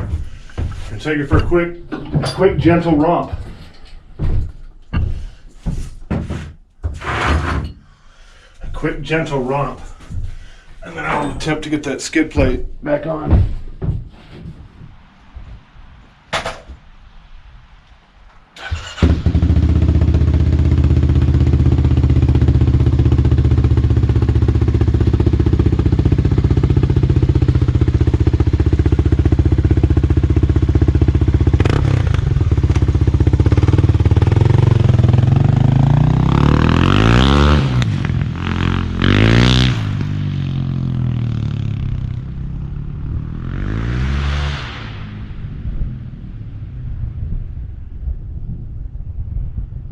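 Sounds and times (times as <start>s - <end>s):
dirt bike engine idling and revving: 18.7s - 48.2s.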